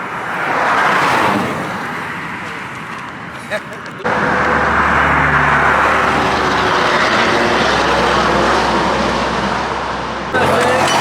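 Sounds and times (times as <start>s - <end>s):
racing kart engines droning: 0.0s - 11.0s.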